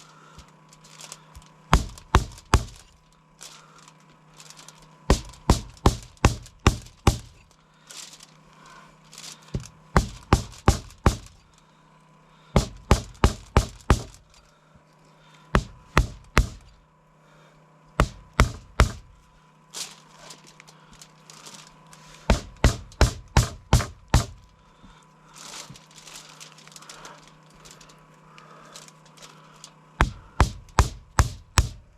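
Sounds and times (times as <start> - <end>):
blade chopping through bone: 1.7 - 2.8, 5.1 - 7.4, 9.5 - 11.4, 12.6 - 14.2, 15.6 - 16.7, 18.0 - 19.0, 22.3 - 24.4, 30.0 - 31.9.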